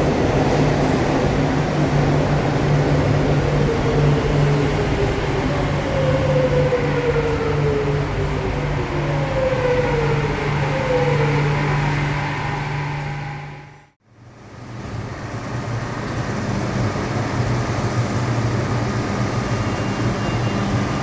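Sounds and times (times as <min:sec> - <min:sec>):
train running with electrical hum: 0:10.0 - 0:21.0.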